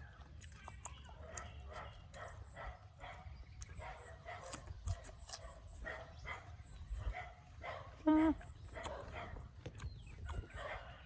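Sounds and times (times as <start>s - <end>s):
dog barking: 1.2s - 8.0s, 8.7s - 9.5s, 10.4s - 11.0s.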